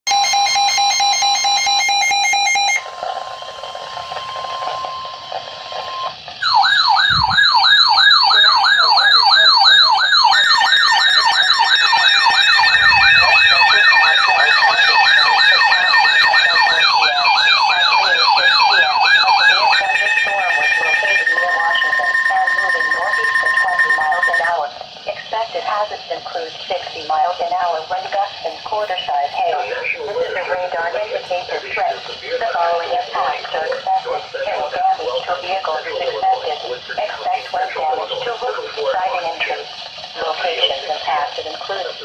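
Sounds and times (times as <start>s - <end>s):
steady higher tone: 0.1s - 7.6s, 8.2s - 24.6s
fast warbling tone: 0.1s - 24.7s.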